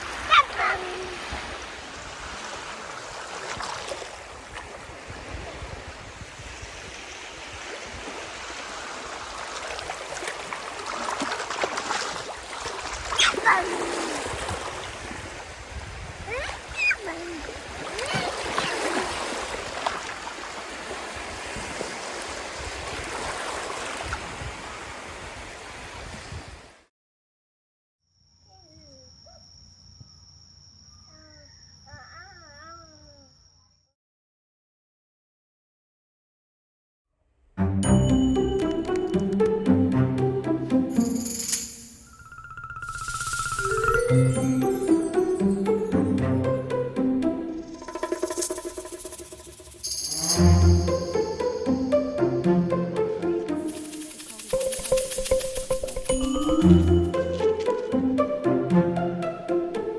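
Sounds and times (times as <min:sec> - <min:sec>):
rushing water: 0:00.0 - 0:26.8, 0:43.0 - 0:59.9
high voices calling: 0:00.1 - 0:01.3, 0:13.1 - 0:14.2, 0:16.3 - 0:18.9
small chirps: 0:42.0 - 0:44.2.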